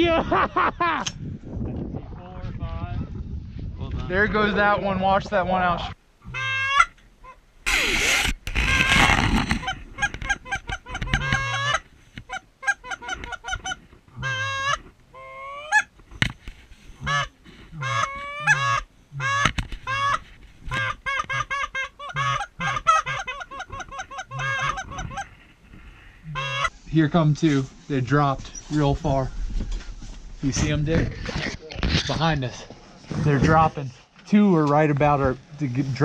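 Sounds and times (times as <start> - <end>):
goose honking: 6.3 - 15.9, 17.0 - 25.4, 26.2 - 26.7.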